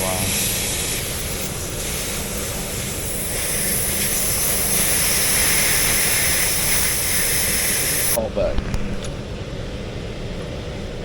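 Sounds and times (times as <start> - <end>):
gas hissing through hoses: 0.0 - 8.2.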